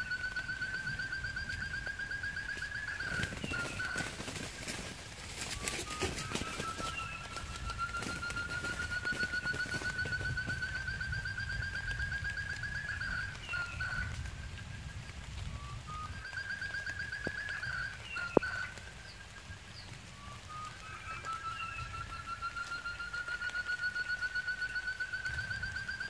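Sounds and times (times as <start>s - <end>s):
quail trilling call: 0.0s - 14.8s, 15.9s - 19.3s.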